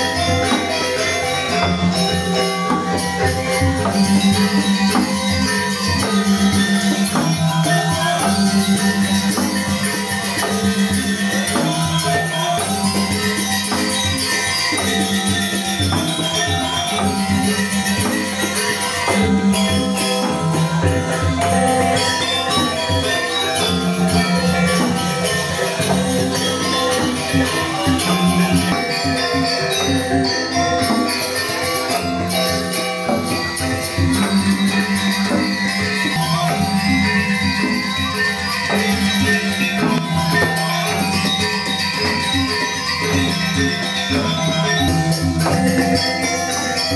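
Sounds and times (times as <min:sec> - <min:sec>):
gamelan music: 0:00.0 - 0:46.9
jingling cymbal shimmer: 0:00.0 - 0:46.9
metallophone ringing tones: 0:00.0 - 0:46.9.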